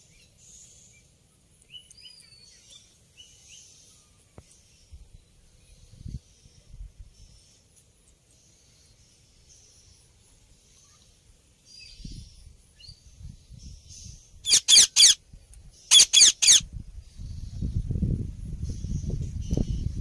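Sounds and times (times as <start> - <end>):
parrot chirping: 14.5 - 15.2, 15.9 - 16.6
parrot screeching: 14.5 - 15.2, 15.9 - 16.6.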